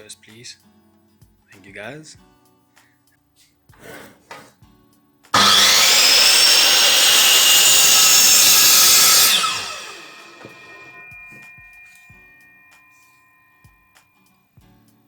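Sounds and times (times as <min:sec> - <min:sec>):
miter saw cutting wood: 0:05.4 - 0:11.4.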